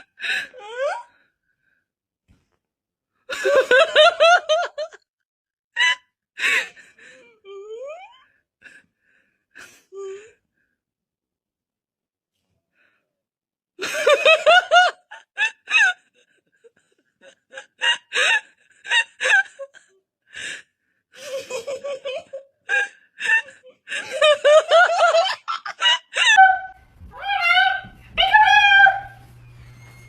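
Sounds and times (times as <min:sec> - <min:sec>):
person laughing hard: 0:21.2 - 0:26.8.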